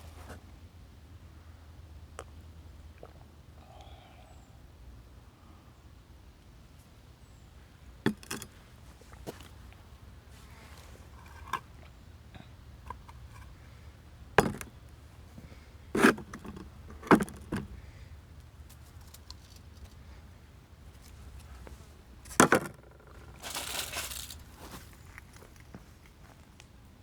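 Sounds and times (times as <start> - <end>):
rustling scrape: 23.0 - 25.2.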